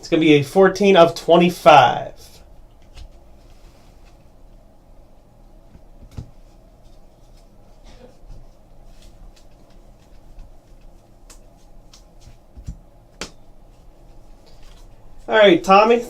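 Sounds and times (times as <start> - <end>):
low room hum: 0.0 - 16.0
cards rustling: 2.7 - 4.3, 6.1 - 15.3.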